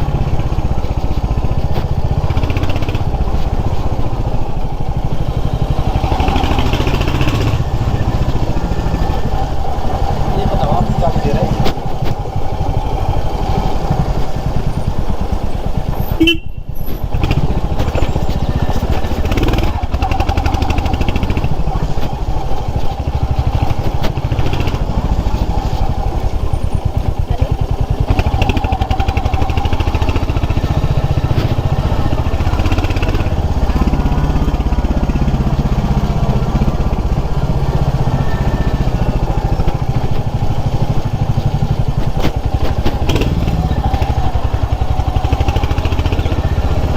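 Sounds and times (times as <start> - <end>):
motorcycle engine running: 0.0 - 46.9.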